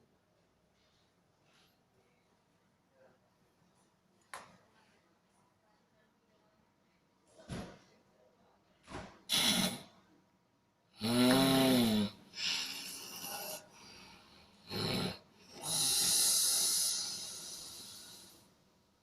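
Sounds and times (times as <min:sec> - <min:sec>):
person snoring: 0:11.0 - 0:18.4.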